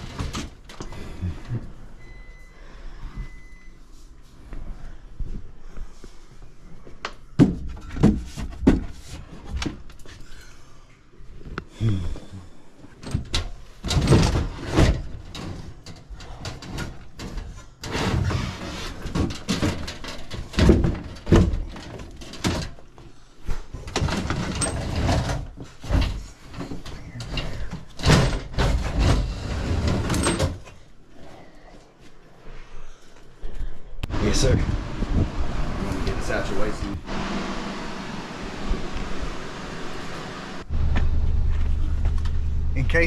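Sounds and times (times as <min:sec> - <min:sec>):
sheet-metal cabinet knocking and scraping: 0:13.1 - 0:22.8, 0:23.8 - 0:30.7.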